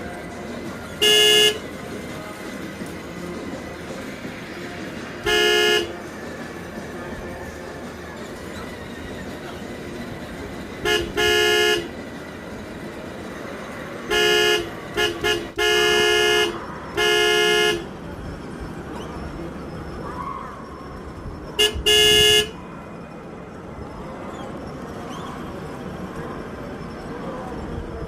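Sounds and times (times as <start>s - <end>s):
toy vehicle electronic horn honking: 1.0s - 1.7s, 5.2s - 6.0s, 10.8s - 12.0s, 14.0s - 17.9s, 21.6s - 22.6s.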